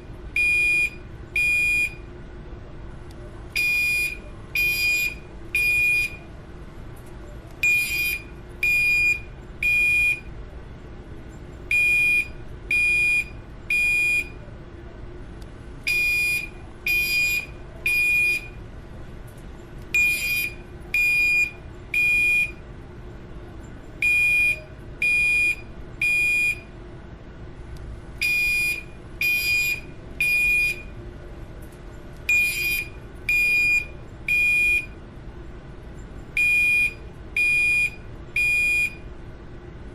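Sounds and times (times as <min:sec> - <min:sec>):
steady low hum: 0:00.0 - 0:39.9
fire alarm beeping: 0:00.4 - 0:02.1, 0:03.6 - 0:06.3, 0:07.6 - 0:10.3, 0:11.7 - 0:14.4, 0:15.9 - 0:18.6, 0:20.0 - 0:22.6, 0:24.0 - 0:26.7, 0:28.2 - 0:31.0, 0:32.3 - 0:35.0, 0:36.3 - 0:39.0.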